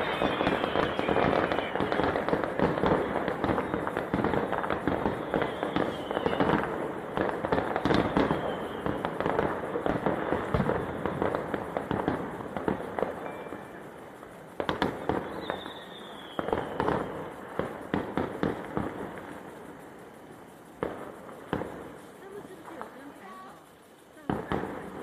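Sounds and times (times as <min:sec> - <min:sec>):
falling firework whistle: 0:00.0 - 0:19.6
fireworks bangs and crackling: 0:00.0 - 0:25.0.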